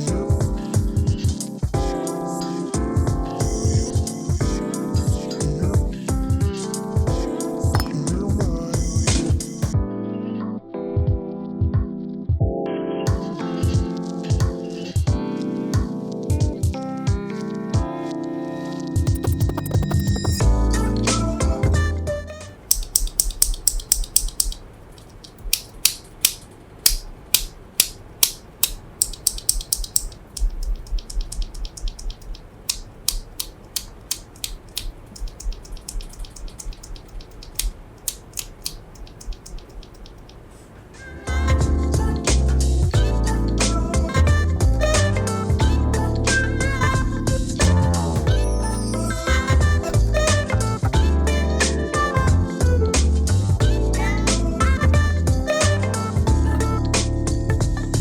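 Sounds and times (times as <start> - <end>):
kick drum hits: 0.3 - 2.0, 3.0 - 5.2, 5.8 - 9.9, 11.0 - 15.2
synth chords: 17.8 - 23.2
mechanical keyboard key clacks: 22.7 - 40.4.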